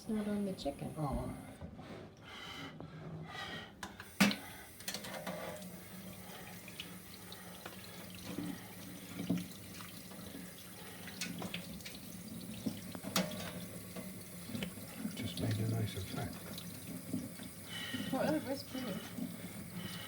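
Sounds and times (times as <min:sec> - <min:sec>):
small knocks and clatters: 0:03.8 - 0:05.6, 0:11.1 - 0:15.6
tap running into sink: 0:04.0 - 0:05.6, 0:07.6 - 0:10.3, 0:11.1 - 0:18.4.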